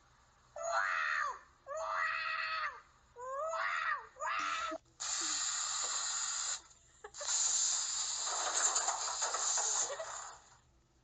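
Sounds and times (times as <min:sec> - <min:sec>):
long hisses: 0:05.0 - 0:10.6.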